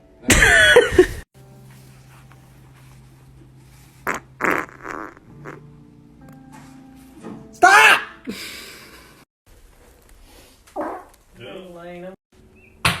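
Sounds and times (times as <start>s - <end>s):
person farting: 0.3s - 1.2s, 4.0s - 5.6s.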